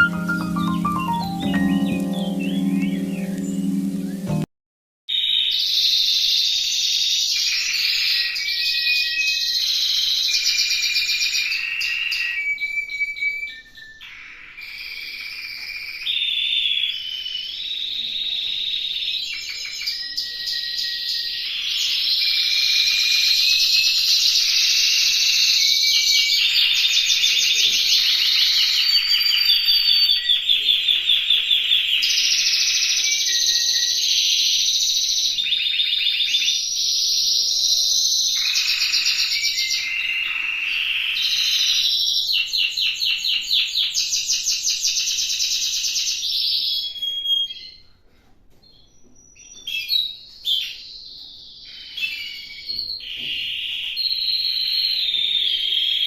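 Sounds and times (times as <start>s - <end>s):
canary singing trills: 0.0s - 4.4s
short bird notes: 0.0s - 4.5s.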